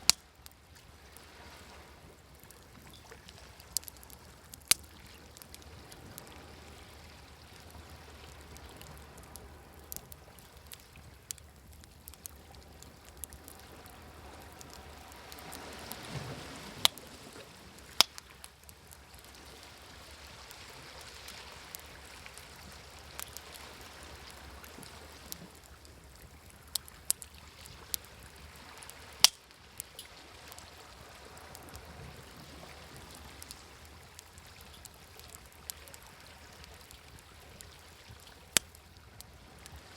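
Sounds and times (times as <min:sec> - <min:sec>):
sharp pops from fire: 0:00.0 - 0:00.6, 0:02.4 - 0:05.8, 0:08.4 - 0:17.2, 0:17.8 - 0:19.4, 0:21.0 - 0:28.1, 0:28.7 - 0:30.7, 0:32.8 - 0:39.1
wood fire crackling: 0:00.0 - 0:39.8
sea waves: 0:00.0 - 0:39.9.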